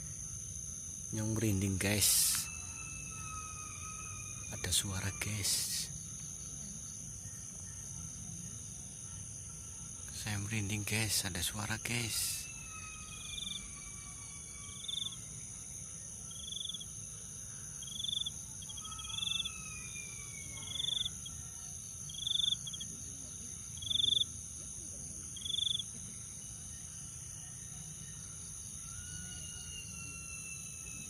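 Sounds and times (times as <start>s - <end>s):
crickets droning: 0.0s - 31.0s
faint falling whistle-like tones: 27.5s - 31.0s.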